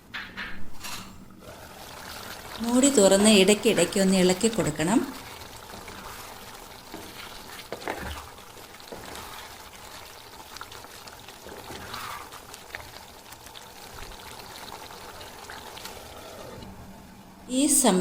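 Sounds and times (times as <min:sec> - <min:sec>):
spoon stirring and scraping: 0:00.6 - 0:01.3, 0:02.1 - 0:13.4
curry bubbling in a pan: 0:00.6 - 0:17.5.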